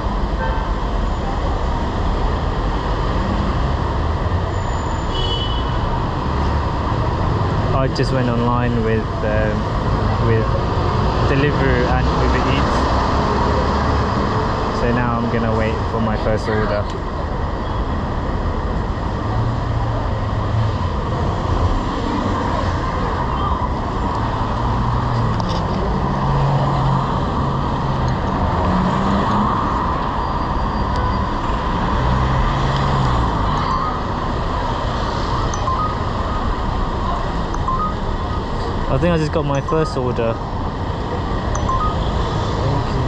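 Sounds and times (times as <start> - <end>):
engines humming: 0.0 - 43.0
road traffic: 0.0 - 43.0.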